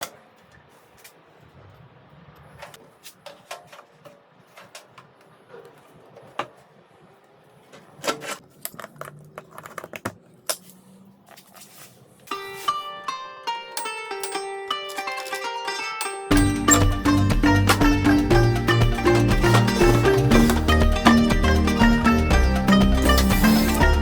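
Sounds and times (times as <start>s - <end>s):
plucked-string music: 12.3s - 24.0s.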